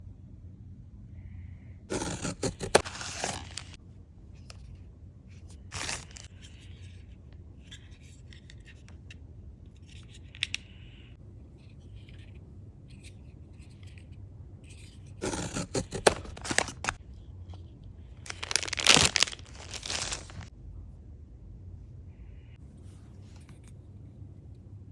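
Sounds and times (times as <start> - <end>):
packaging rustling: 1.9 - 3.8, 5.7 - 6.3, 15.2 - 17.0, 18.3 - 20.5
packaging tearing and crinkling: 1.9 - 3.8, 5.7 - 6.3, 15.2 - 17.0, 18.3 - 20.5.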